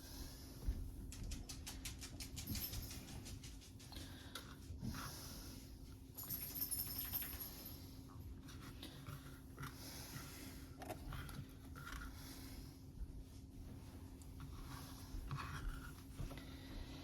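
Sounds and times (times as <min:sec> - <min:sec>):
low steady hum: 0:00.0 - 0:17.0
soft rustles and clicks: 0:00.5 - 0:05.1.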